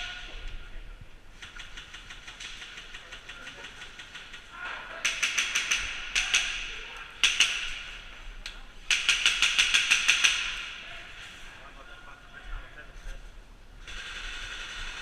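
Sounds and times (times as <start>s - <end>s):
airsoft guns firing bursts: 1.3s - 8.0s, 8.9s - 10.8s, 13.8s - 15.0s.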